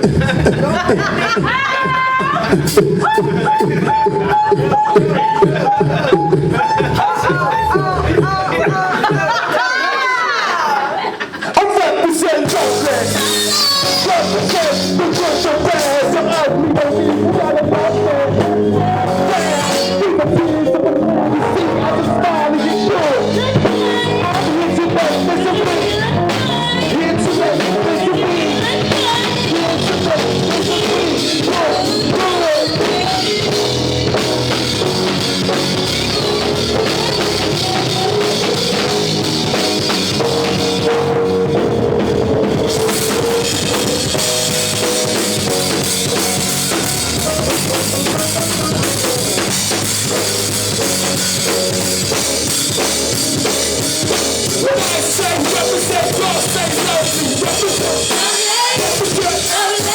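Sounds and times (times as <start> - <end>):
drum kit: 0.0 - 9.5, 12.2 - 59.9
rock band playing: 0.0 - 10.3, 12.2 - 59.9
held guitar or keyboard notes: 12.4 - 59.9.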